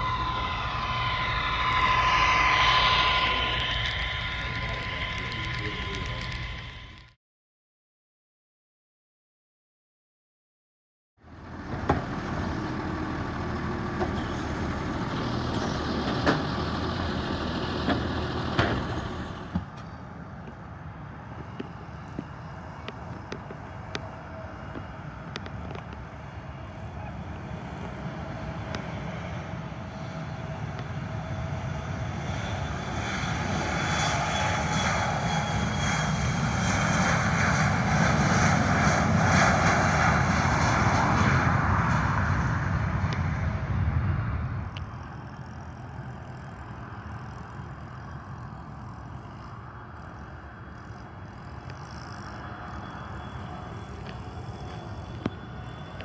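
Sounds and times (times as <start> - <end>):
airplane engines rumbling: 0.0 - 7.2, 11.2 - 56.0
steady background noise: 44.6 - 56.0.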